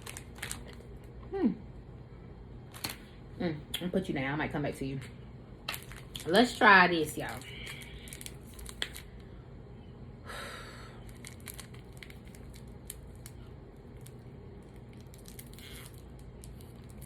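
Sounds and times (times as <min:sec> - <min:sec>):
wrapper rustle: 0:00.0 - 0:00.8, 0:05.7 - 0:06.6, 0:07.2 - 0:09.1, 0:11.0 - 0:17.0
candy wrapper crinkling and tearing: 0:00.0 - 0:01.0, 0:05.7 - 0:06.6, 0:07.2 - 0:09.2, 0:11.0 - 0:17.0.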